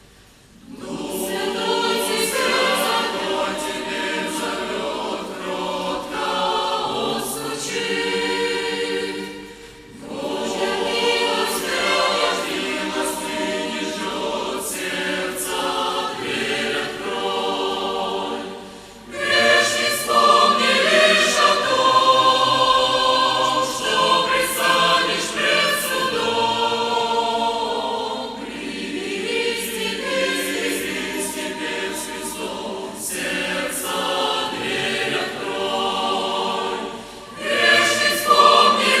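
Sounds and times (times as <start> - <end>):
choir singing a hymn: 0.0 - 39.0.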